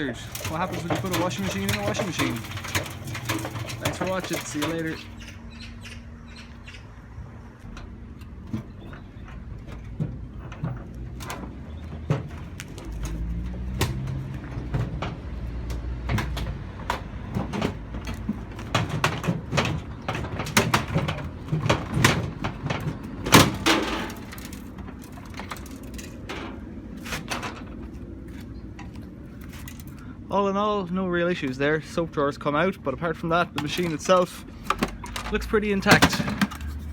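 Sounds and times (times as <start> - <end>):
plastic toy knocking and clattering: 0.2 - 5.2, 12.0 - 26.3, 33.5 - 36.8.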